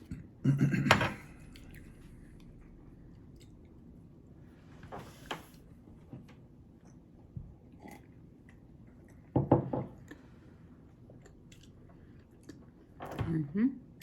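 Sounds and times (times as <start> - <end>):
quiet chewing: 6.8 - 9.3, 9.9 - 13.0.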